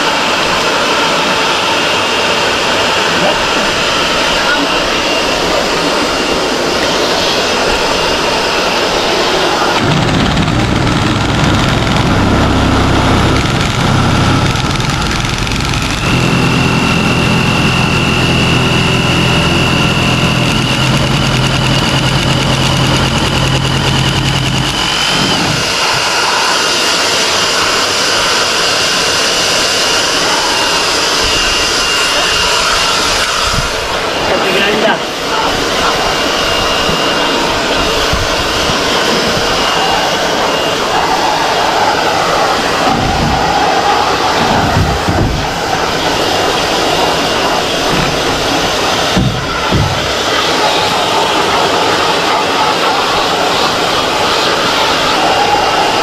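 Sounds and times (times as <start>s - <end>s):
high machine whine: 0.0s - 56.0s
background whir: 5.2s - 26.5s
machine motor low hum: 9.8s - 25.4s.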